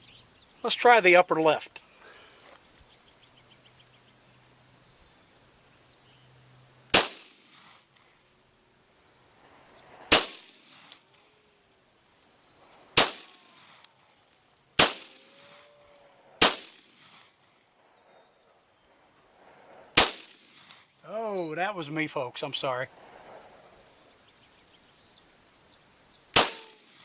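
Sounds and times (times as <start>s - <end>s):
pistol shots with echo: 6.9s - 7.3s, 10.1s - 10.5s, 13.0s - 13.7s, 14.8s - 15.6s, 16.4s - 17.0s, 20.0s - 20.5s, 26.4s - 26.9s.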